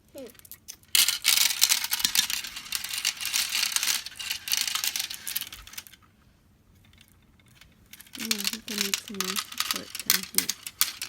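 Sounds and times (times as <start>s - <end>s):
marbles clattering down toy track: 0.2s - 6.0s, 7.5s - 11.0s.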